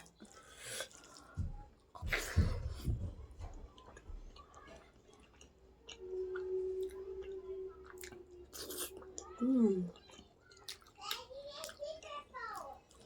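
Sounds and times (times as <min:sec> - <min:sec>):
chewing and biting food: 0:03.6 - 0:13.0.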